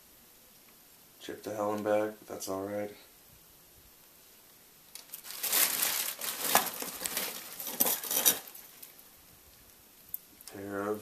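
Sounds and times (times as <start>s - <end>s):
packing material crinkling: 4.9s - 9.0s
small items clicking and clattering: 4.9s - 9.0s.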